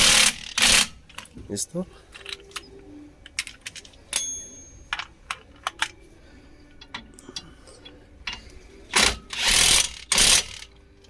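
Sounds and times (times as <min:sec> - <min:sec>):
metal tools clicking and clinking: 0:02.1 - 0:06.0, 0:06.8 - 0:10.8
struck metal part ringing: 0:04.1 - 0:05.9.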